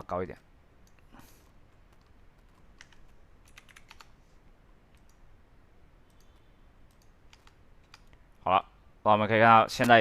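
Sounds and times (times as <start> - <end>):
computer mouse clicking: 0.8 - 4.2, 4.9 - 5.2, 6.0 - 8.2
keyboard clicking: 1.8 - 4.2, 4.9 - 5.2, 6.1 - 8.2.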